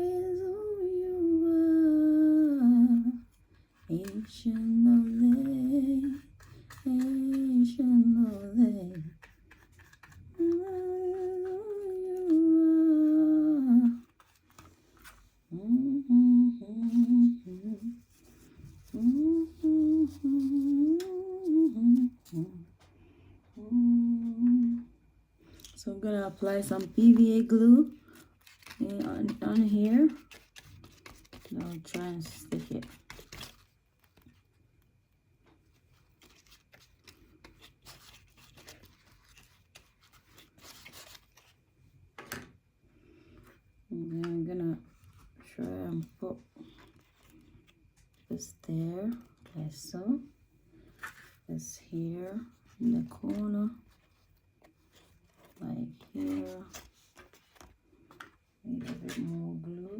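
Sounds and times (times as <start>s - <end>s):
woman humming a tune: 0.0s - 3.3s, 10.4s - 14.1s, 15.5s - 18.0s, 18.9s - 22.7s, 23.5s - 25.0s
paper rustling and crinkling: 3.3s - 12.4s, 13.8s - 15.4s, 25.5s - 34.7s, 35.4s - 41.6s, 45.0s - 49.6s, 52.2s - 59.4s.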